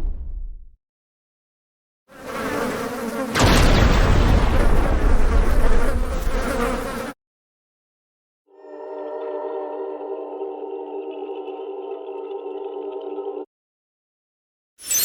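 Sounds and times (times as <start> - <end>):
buzzing insect swarm: 2.1 - 3.8, 4.4 - 7.2.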